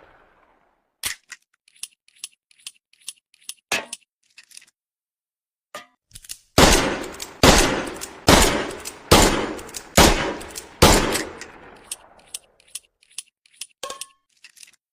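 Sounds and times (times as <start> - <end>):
faint metallic clicks: 6.1 - 14.8.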